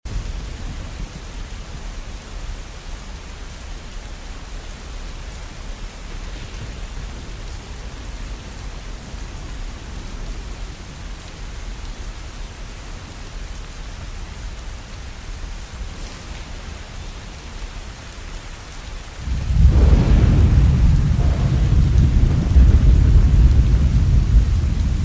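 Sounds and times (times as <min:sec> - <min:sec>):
rain falling: 0:00.0 - 0:25.0
deep low rumble: 0:19.3 - 0:25.0.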